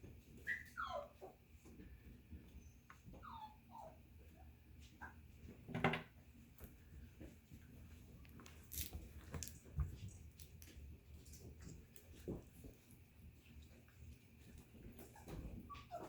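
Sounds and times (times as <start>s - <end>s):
puppies moving and mouthing: 6.4s - 16.0s.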